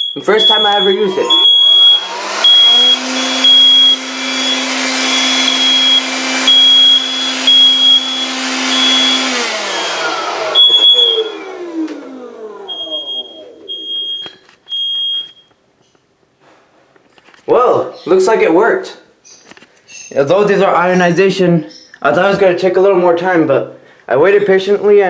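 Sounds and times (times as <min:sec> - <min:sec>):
smoke alarm beeping: 0:00.0 - 0:11.6, 0:12.6 - 0:15.6
electric blower running: 0:00.4 - 0:14.1.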